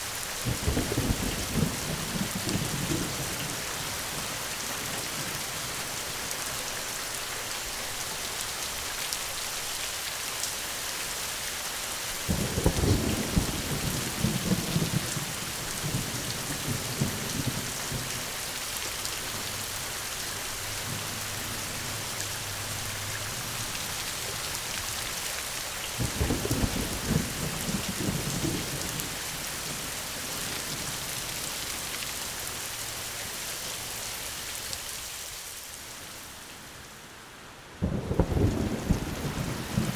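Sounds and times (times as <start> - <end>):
steady rain falling: 0.0 - 39.9
thunder rumbling: 0.5 - 3.6, 12.3 - 18.5, 19.2 - 24.9, 25.9 - 31.0, 37.8 - 39.9.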